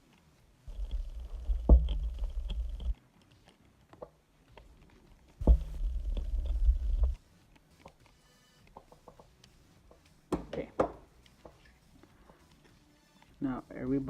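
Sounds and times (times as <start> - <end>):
screws twisting with low rumbling: 0.7 - 3.8, 5.1 - 7.2.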